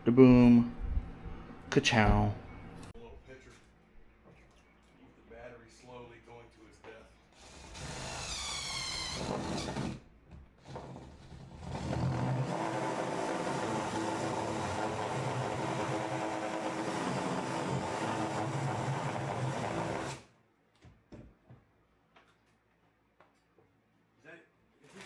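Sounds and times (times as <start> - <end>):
motor whining: 7.4 - 10.0, 10.6 - 20.2.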